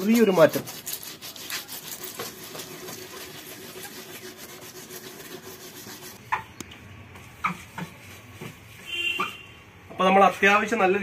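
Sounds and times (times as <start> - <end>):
sandpaper scrubbing plastic: 0.0 - 6.2.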